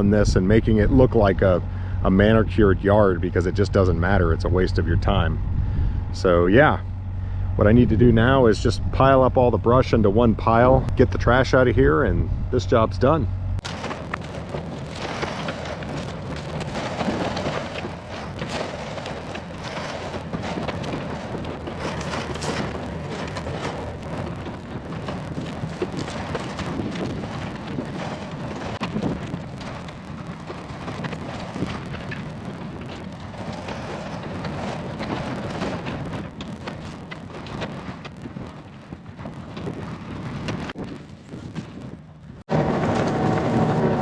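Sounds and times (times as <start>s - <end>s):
branches crackling and snapping: 13.6s - 44.0s
excavator diesel engine running: 42.5s - 44.0s.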